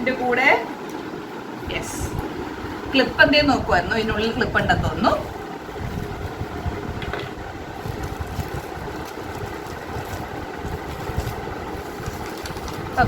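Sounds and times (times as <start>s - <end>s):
background rumble and hiss: 0.0s - 13.0s
faint clicks and rustles of packaging: 7.7s - 13.0s.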